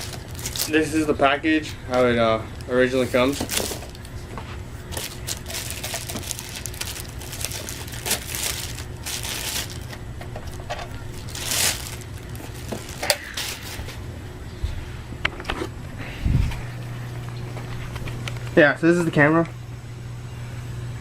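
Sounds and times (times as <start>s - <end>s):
packaging crinkling and rustling: 0.0s - 14.0s
steady low hum: 0.0s - 21.0s.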